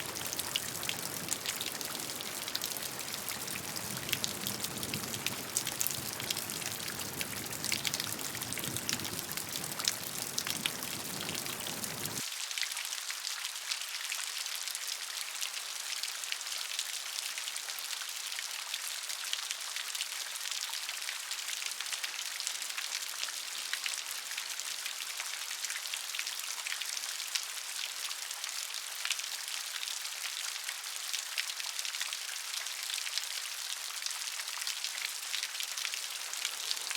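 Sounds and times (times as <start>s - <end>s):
thin hissy rain: 0.0s - 12.2s, 35.4s - 36.9s
steady rain pattering: 0.0s - 36.9s.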